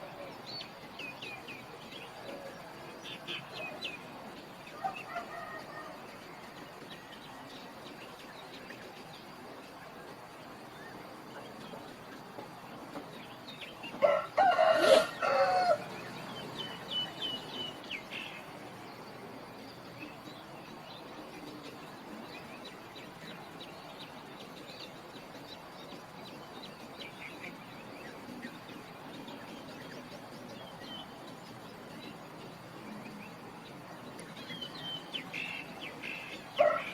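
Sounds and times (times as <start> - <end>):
faint outdoor background: 0.0 - 36.9
small birds chirping: 0.0 - 36.9
rooster crowing: 4.8 - 6.0, 14.0 - 16.0, 36.6 - 36.9.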